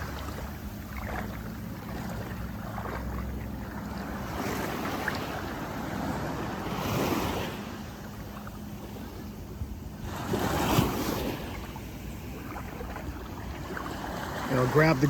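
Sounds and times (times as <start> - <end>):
small sea waves washing onto beach: 0.0 - 15.0
wind rumbling on microphone: 0.0 - 15.0.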